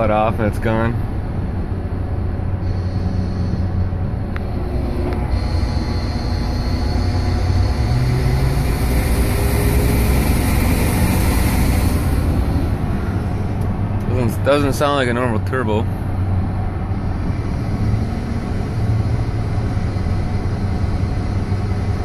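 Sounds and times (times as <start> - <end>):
truck engine rumble: 0.0 - 22.0
high hiss: 4.8 - 12.8.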